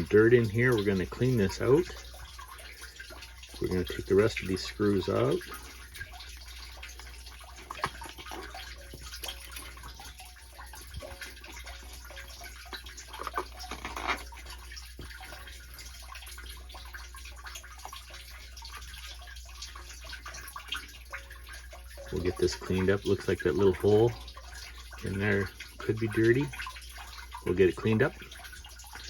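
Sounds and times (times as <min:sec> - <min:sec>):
water dripping and trickling: 0:00.0 - 0:29.0
rustle and clatter: 0:10.8 - 0:15.5.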